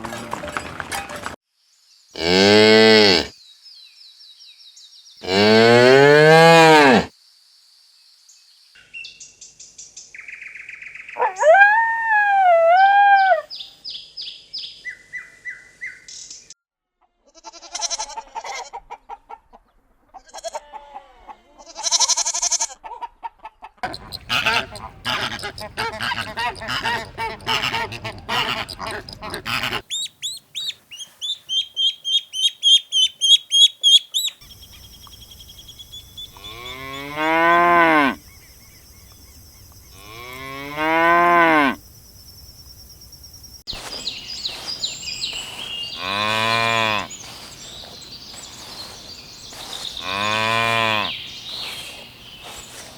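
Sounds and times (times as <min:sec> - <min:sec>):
cow mooing: 0:02.2 - 0:03.3, 0:05.2 - 0:07.1, 0:23.8 - 0:29.8, 0:36.4 - 0:38.2, 0:45.9 - 0:47.1, 0:50.0 - 0:51.2
short animal calls: 0:23.8 - 0:34.3
bird chirps: 0:23.8 - 0:37.0, 0:42.0 - 0:52.9.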